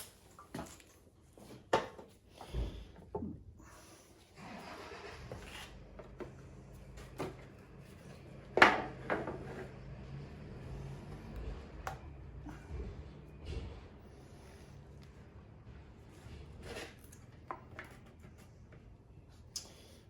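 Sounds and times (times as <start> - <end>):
hard objects knocking and clattering: 8.5 - 9.8.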